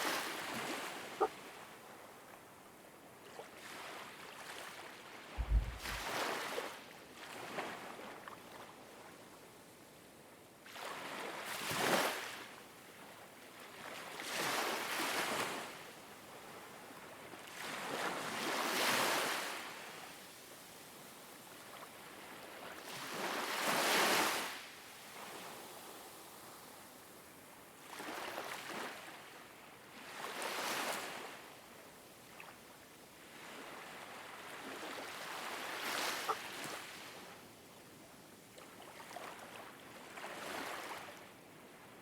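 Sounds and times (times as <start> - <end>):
low thump: 5.4 - 6.1
ocean waves washing in: 5.4 - 6.2.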